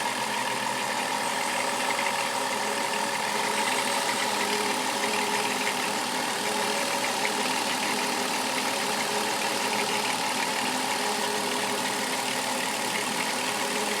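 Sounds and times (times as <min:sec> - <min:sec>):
car engine idling: 0:00.0 - 0:14.0
engine rattling: 0:00.0 - 0:14.0.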